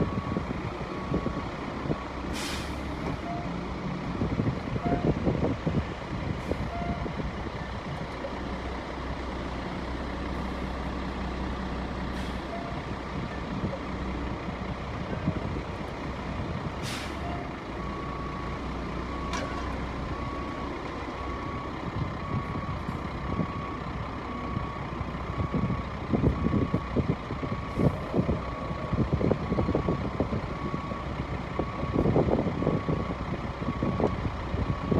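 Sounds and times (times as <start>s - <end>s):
concrete mixer truck running: 0.0s - 34.9s
air brake hisses: 2.3s - 2.9s, 16.8s - 17.3s
reversing alarm beeping: 6.5s - 7.8s, 16.9s - 26.8s.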